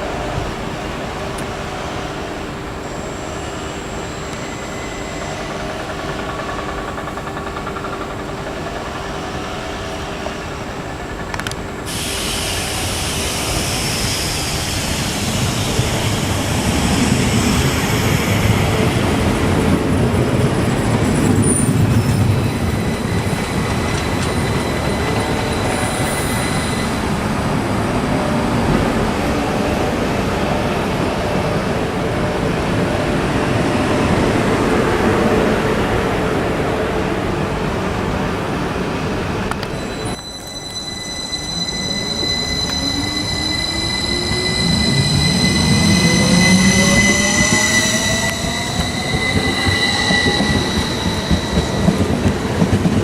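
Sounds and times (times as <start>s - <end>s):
train wheels on rails: 0.0s - 53.0s
high squeal: 2.7s - 8.0s, 11.8s - 35.5s, 39.5s - 53.0s.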